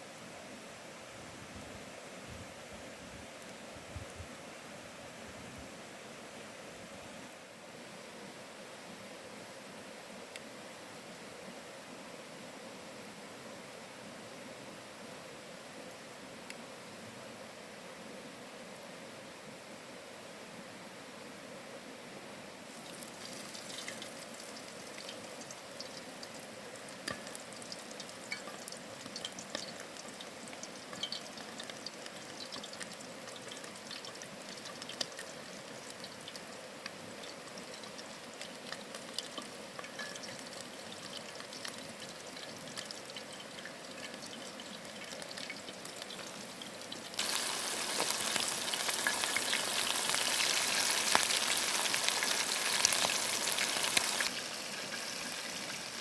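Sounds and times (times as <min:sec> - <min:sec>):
chicken wings frying in oil: 0:22.7 - 0:56.0.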